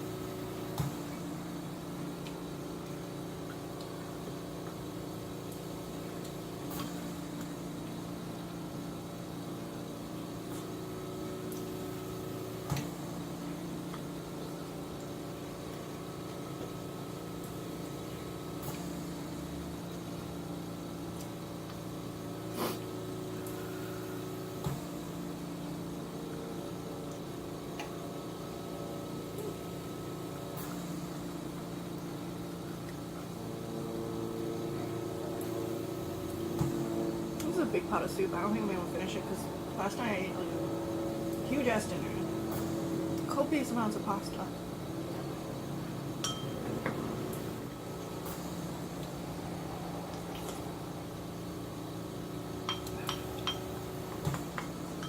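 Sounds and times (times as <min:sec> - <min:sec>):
low electrical hum: 0:00.0 - 0:55.0
spoon clinking against bowl: 0:46.2 - 0:46.6.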